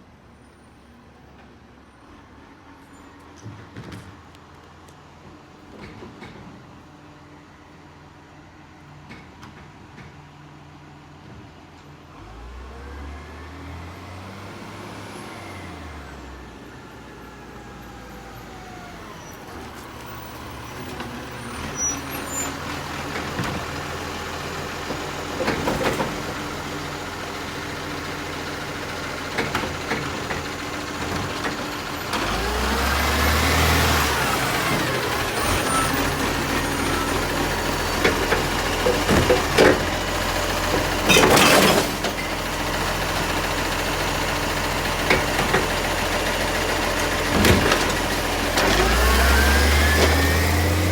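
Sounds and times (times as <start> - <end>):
garbage truck engine revving: 12.2 - 50.9.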